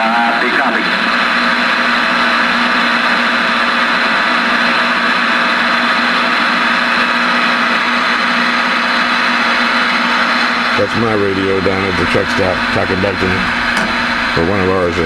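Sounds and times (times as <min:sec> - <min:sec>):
radio static hiss: 0:00.0 - 0:01.2, 0:10.6 - 0:15.0
steady low tone: 0:10.8 - 0:15.0.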